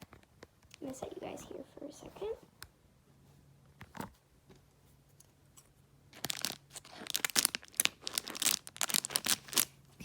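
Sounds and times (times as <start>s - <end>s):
plastic packaging crinkling: 6.1s - 9.9s.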